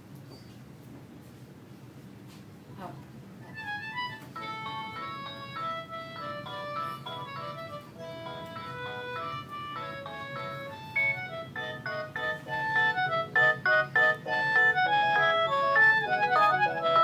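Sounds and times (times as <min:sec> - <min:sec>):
mobile phone ringtone melody: 0:04.0 - 0:17.0.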